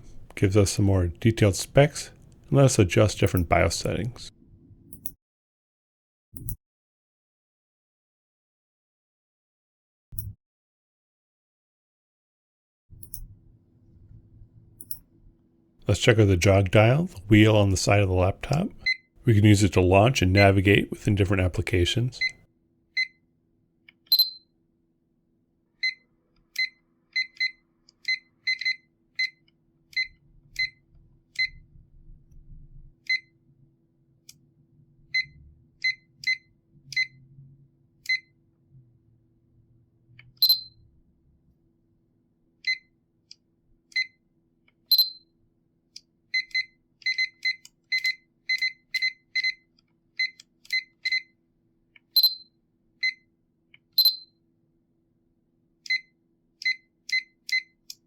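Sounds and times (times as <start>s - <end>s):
short high electronic beeps: 40.4s - 40.7s, 52.2s - 52.5s, 54.0s - 54.3s.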